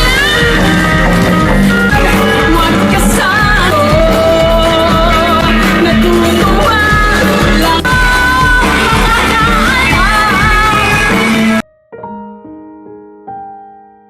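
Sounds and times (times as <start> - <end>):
person singing over band: 0.0 - 11.6.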